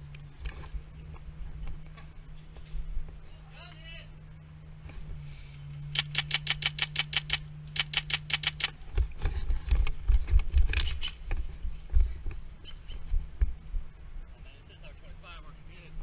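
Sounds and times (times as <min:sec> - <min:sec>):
airsoft rifle firing rapid shots: 0:06.0 - 0:08.7.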